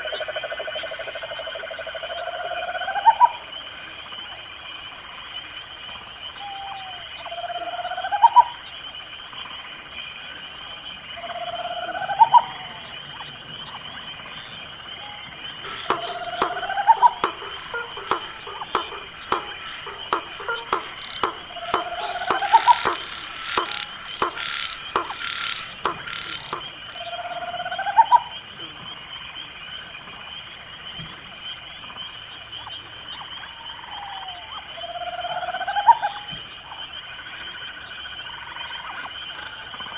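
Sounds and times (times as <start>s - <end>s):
crickets trilling: 0.0s - 39.9s
quick run of clicks: 15.6s - 26.8s.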